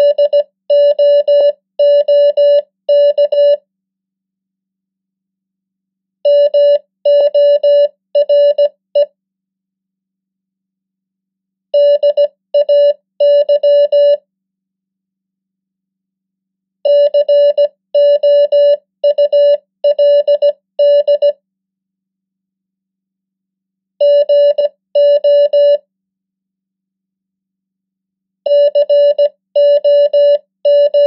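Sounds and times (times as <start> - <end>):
morse code beeps: 0.0 - 3.6, 6.3 - 9.1, 11.8 - 14.2, 16.9 - 21.4, 24.0 - 25.8, 28.5 - 31.0.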